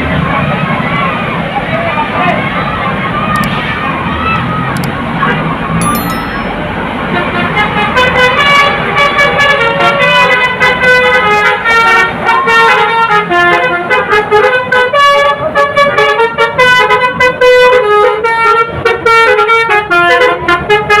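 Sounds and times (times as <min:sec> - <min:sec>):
bus air horns playing melody: 0:07.0 - 0:21.0.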